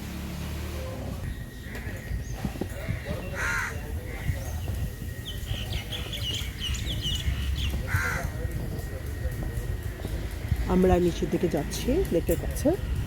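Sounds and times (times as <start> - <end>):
small birds chirping: 1.2 - 13.0
crows cawing: 2.8 - 4.4, 7.2 - 8.5.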